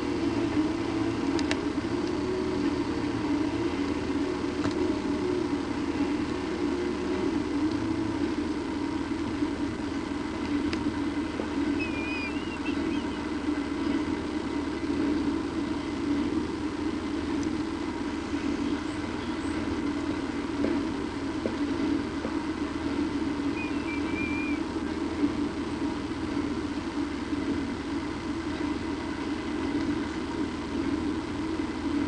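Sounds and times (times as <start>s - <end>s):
low mechanical hum: 0.0s - 32.0s
high bird chirps: 11.8s - 13.2s, 23.5s - 24.6s.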